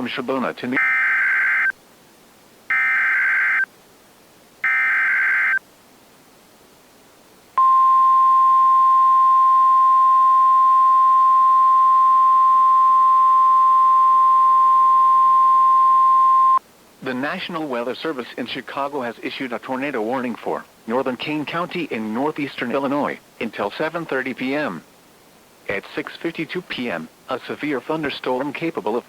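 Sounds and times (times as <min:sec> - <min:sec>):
long steady attention tone: 0:00.0 - 0:04.0, 0:04.6 - 0:06.2, 0:07.5 - 0:29.0
warbling digital data tones: 0:02.7 - 0:03.7, 0:04.6 - 0:05.6.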